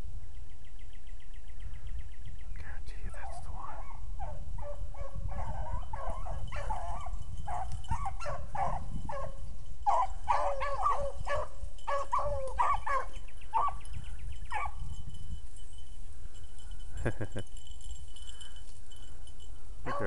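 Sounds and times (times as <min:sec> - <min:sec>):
hounds baying: 0:03.3 - 0:15.0, 0:17.8 - 0:20.0.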